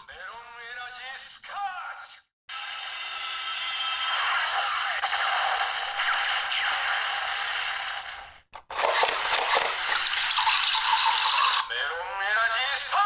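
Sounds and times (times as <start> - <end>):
sharp clicks: 8.6 - 10.2.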